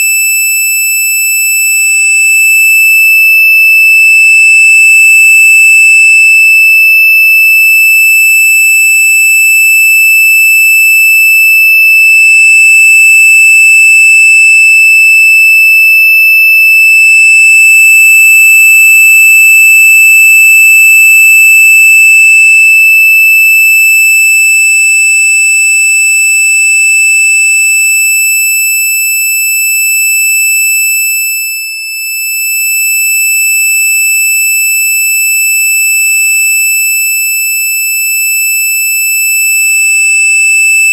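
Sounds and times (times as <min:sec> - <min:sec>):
high-pitched electronic tone: 0:12.0 - 0:14.8, 0:16.8 - 0:20.9.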